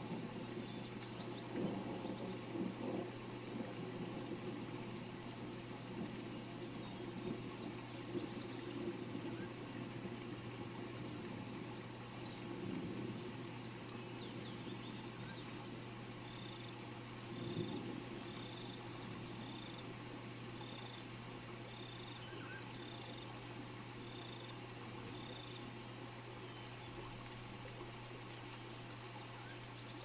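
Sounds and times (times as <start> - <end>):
rain hissing: 0.0 - 30.0.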